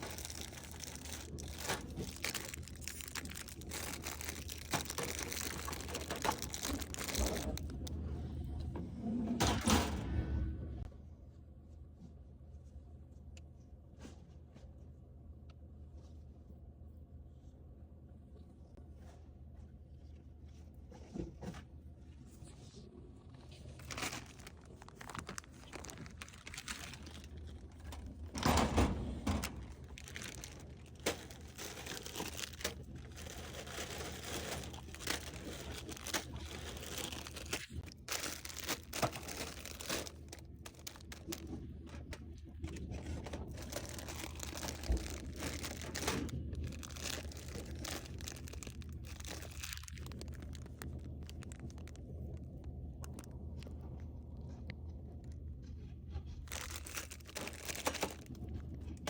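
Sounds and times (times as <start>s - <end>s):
snack packaging crinkling: 0.0s - 8.0s, 23.5s - 28.4s, 29.2s - 54.9s, 56.4s - 59.0s.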